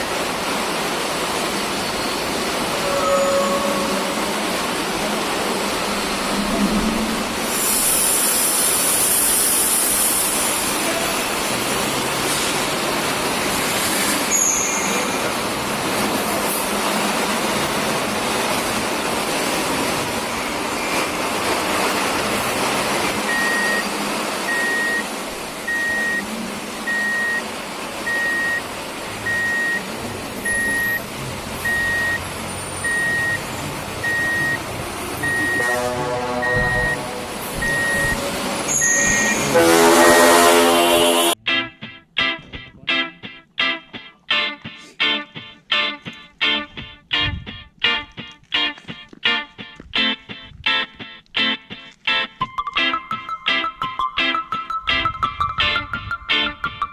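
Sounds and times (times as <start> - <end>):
steady noise: 0.0 - 41.5
horn tooting: 2.6 - 4.8, 34.0 - 41.4
vehicle reversing beeper: 23.3 - 23.9, 24.5 - 25.1, 25.7 - 26.3, 26.9 - 40.4.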